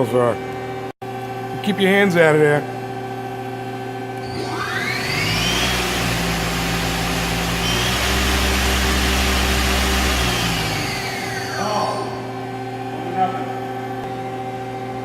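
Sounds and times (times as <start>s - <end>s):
lathe spindle whine and hum: 4.2s - 15.0s.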